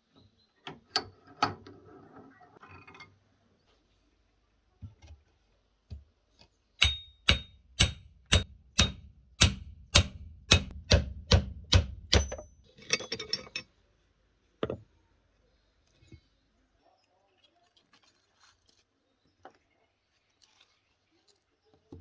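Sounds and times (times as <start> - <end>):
hammer striking metal: 6.8 - 12.5.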